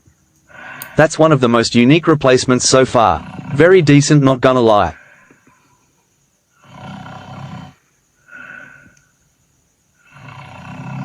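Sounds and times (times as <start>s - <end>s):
cartoon snore with whistle: 6.6s - 8.8s, 10.0s - 11.0s.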